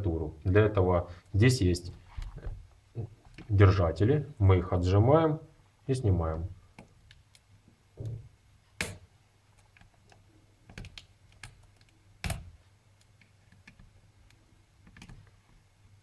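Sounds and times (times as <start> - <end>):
sharp plastic snaps: 8.8 - 15.3.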